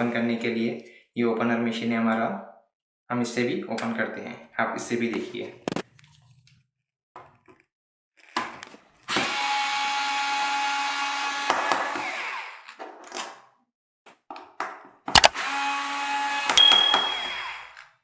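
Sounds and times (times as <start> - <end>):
electric screwdriver whirring: 15.2 - 16.5.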